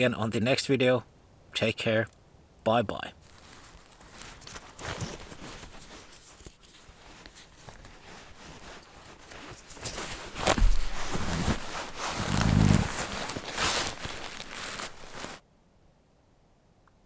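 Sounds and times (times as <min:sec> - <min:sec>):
footsteps crunching in snow: 0:03.2 - 0:15.4.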